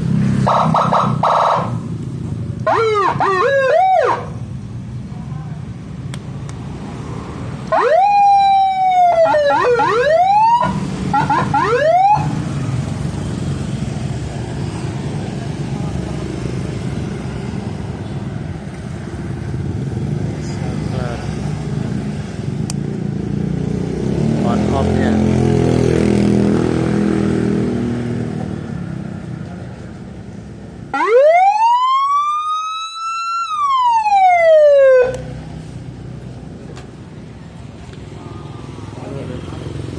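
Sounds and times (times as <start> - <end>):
police siren wailing and whooping: 2.6 - 4.4, 7.7 - 12.3, 30.9 - 35.2.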